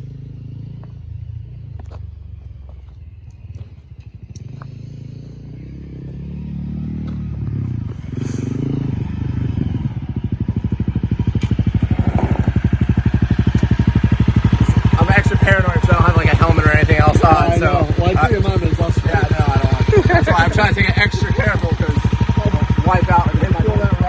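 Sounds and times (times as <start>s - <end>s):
low rumble: 7.3s - 23.8s.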